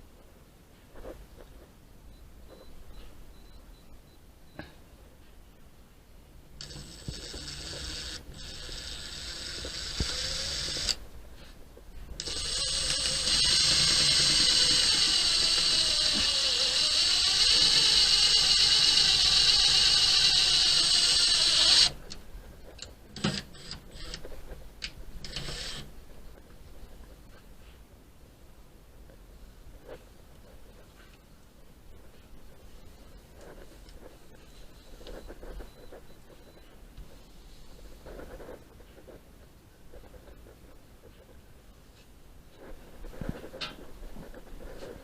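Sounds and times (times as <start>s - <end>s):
small power tool running: 6.6s - 11.0s, 12.2s - 22.0s.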